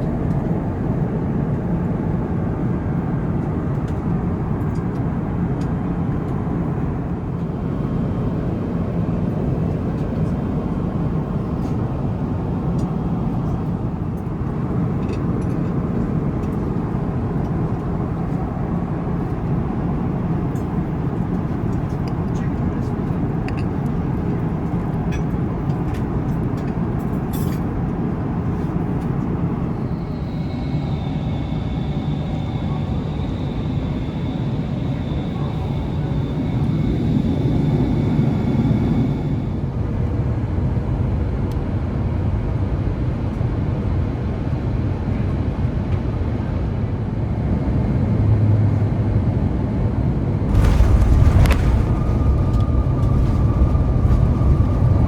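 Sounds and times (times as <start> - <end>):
vehicle rumble: 47.3 - 55.0
loud rushing burst: 50.5 - 55.0.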